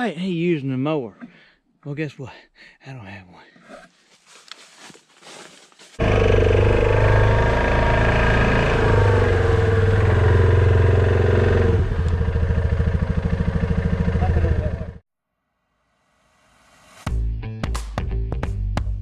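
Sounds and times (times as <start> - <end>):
small gasoline engine running: 6.0 - 15.0.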